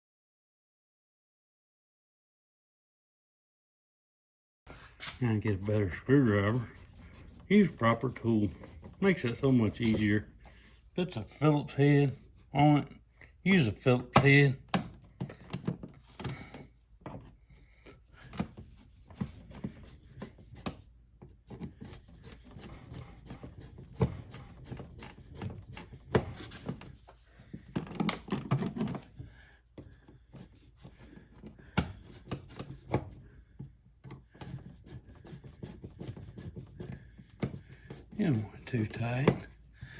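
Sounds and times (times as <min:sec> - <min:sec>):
screwdriver scraping and clicking: 0:21.5 - 0:27.2.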